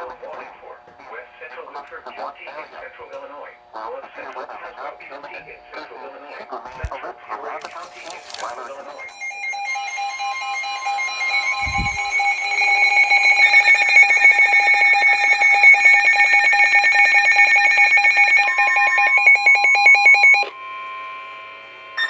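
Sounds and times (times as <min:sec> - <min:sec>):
pulsing electronic alarm tones: 0:08.9 - 0:22.0.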